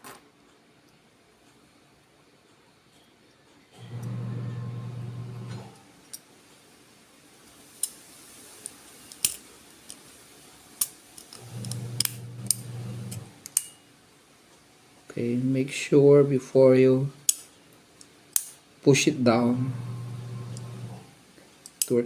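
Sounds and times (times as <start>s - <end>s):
low steady hum: 3.8s - 6.2s, 11.4s - 15.7s, 19.2s - 21.4s.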